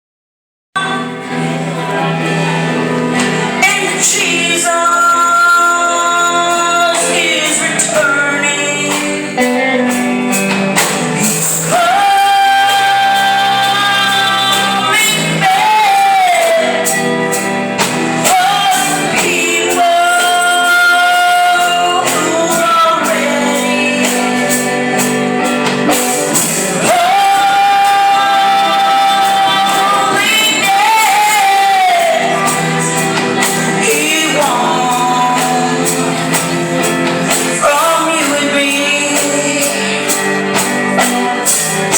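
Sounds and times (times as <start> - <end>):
gospel instrumental backing: 0.8 - 41.9.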